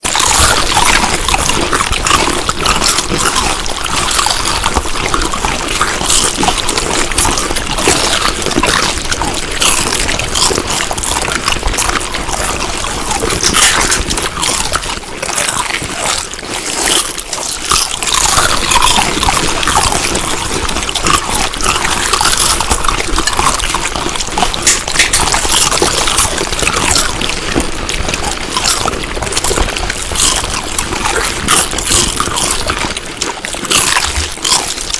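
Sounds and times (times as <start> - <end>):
wet chewing mouth sounds: 0.0 - 34.9.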